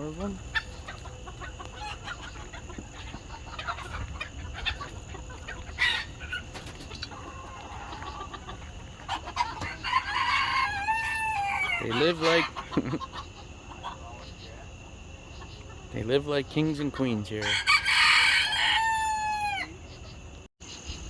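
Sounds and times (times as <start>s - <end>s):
chickens clucking: 0.0s - 21.0s
rooster crowing: 9.1s - 12.5s, 17.4s - 19.9s.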